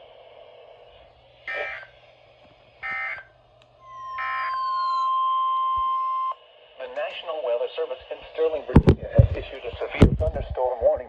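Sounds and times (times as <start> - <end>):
faint falling tones: 3.8 - 6.4
warbling digital data bursts: 3.8 - 6.4
steady alert tone: 3.9 - 6.3.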